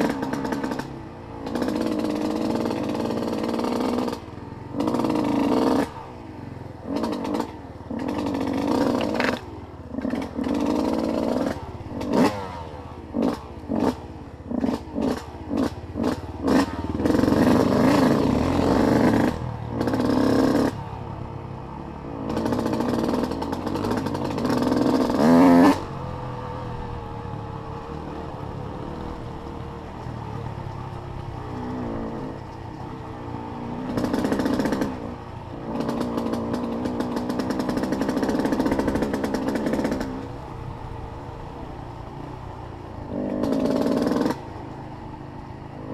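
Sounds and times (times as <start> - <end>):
off-road vehicle engine revving: 0.0 - 45.9.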